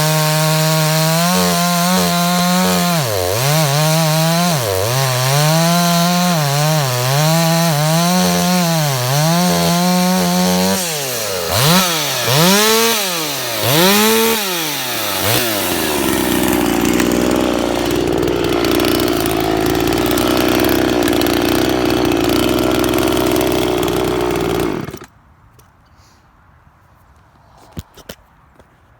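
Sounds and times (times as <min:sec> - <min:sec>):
chainsaw cutting wood: 0:00.0 - 0:25.1.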